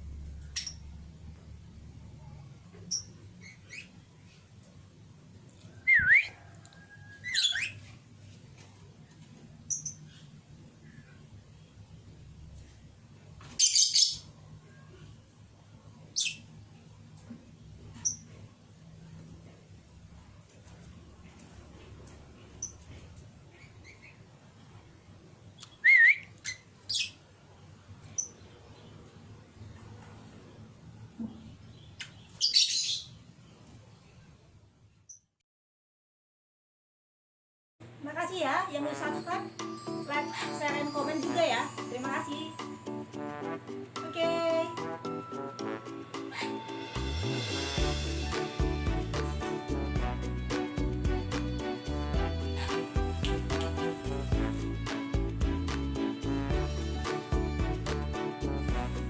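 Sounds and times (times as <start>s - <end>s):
lovebird chirping: 0.4s - 0.9s, 2.8s - 4.0s, 5.7s - 7.9s, 9.6s - 11.1s, 13.6s - 14.8s, 16.1s - 16.5s, 18.0s - 18.3s, 28.0s - 28.6s, 31.7s - 33.2s
lovebird calls: 32.0s - 33.2s.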